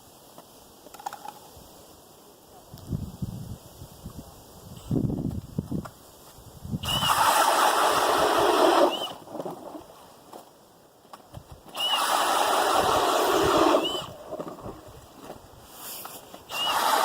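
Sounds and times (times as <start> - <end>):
ice auger boring through ice: 6.8 - 9.9, 11.7 - 15.3, 16.5 - 17.0.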